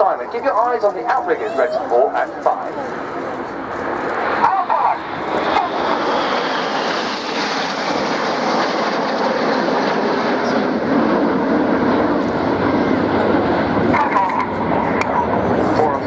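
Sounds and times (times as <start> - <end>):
jets flying past: 0.0 - 16.0.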